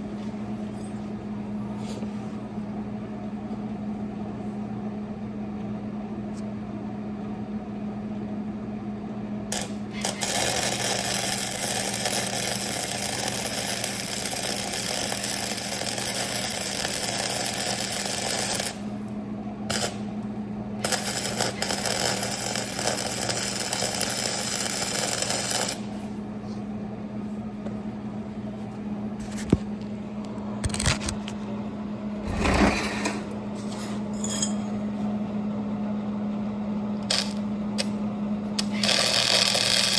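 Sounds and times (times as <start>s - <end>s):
steady hum: 0.0s - 5.4s, 9.2s - 39.9s
welding arc crackling: 9.5s - 19.0s, 19.7s - 20.2s, 20.8s - 26.1s, 37.0s - 38.0s, 38.6s - 39.9s.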